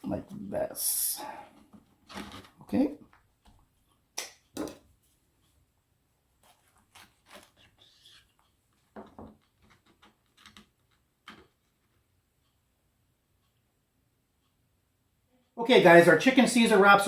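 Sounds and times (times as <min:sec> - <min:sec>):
tortilla wrap rustling: 0:06.4 - 0:11.5.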